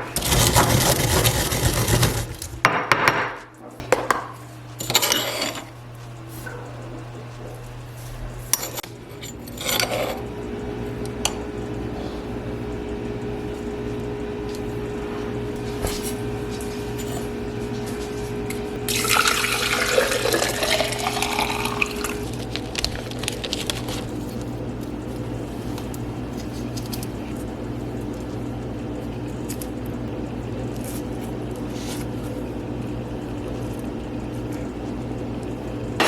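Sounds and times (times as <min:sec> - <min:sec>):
steady low hum: 0:00.0 - 0:36.0
kitchenware clinking: 0:02.6 - 0:05.8, 0:16.6 - 0:17.5
liquid pouring into glass: 0:18.9 - 0:22.4.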